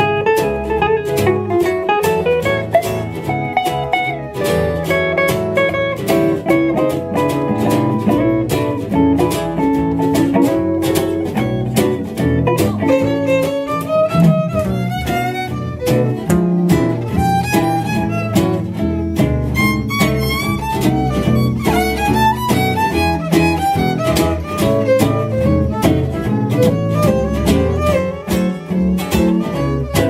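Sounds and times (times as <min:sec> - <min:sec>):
bass: 0:00.0 - 0:30.0
fiddle melody: 0:00.0 - 0:30.0
rhythm guitar: 0:00.0 - 0:30.0.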